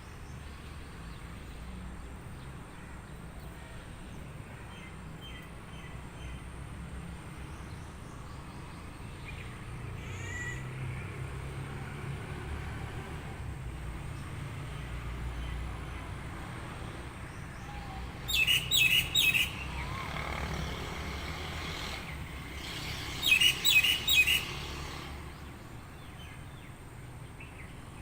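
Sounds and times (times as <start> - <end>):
bird chirps: 17.7 - 20.3, 23.1 - 26.4.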